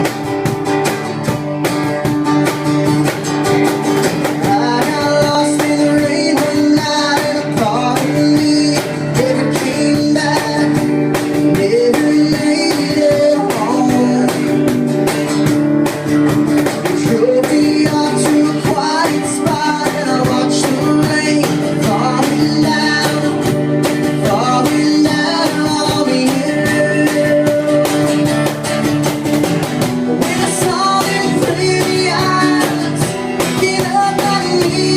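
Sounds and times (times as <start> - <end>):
cajon beating a rhythm: 0.0 - 34.9
strummed acoustic guitar: 0.0 - 34.9
person singing: 4.2 - 14.8, 16.8 - 28.6, 30.0 - 34.9.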